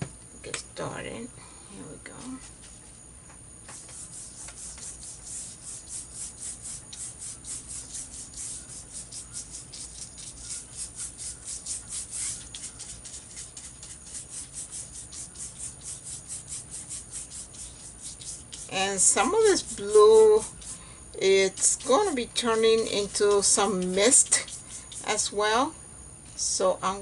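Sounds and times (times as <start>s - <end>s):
paintbrush scrubbing on paper: 3.7s - 25.4s.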